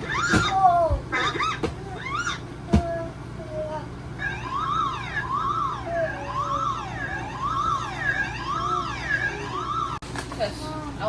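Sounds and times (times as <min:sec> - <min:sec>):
electronic siren wail: 0:04.2 - 0:10.0.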